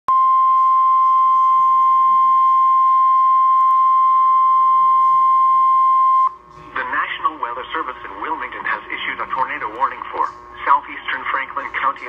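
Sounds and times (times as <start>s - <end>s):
loud steady beep: 0.1s - 6.4s.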